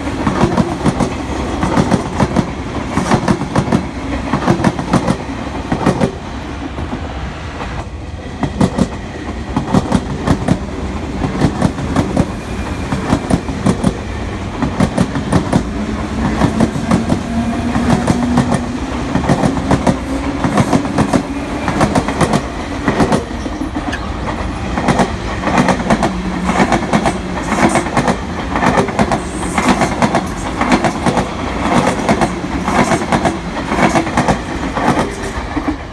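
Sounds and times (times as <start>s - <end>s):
train wheels clattering over rail joints: 8.4s - 35.8s.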